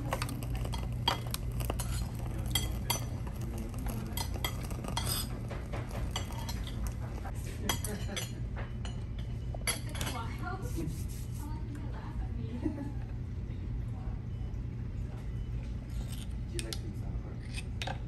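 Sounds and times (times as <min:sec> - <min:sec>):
cutlery and dishes clinking: 0:00.0 - 0:10.2
low background hum: 0:00.0 - 0:18.0.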